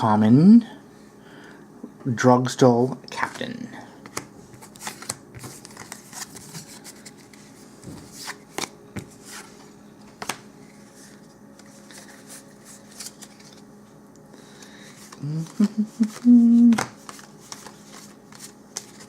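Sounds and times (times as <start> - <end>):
cards clicking and rustling: 3.2 - 9.4, 10.0 - 13.7, 14.4 - 19.0.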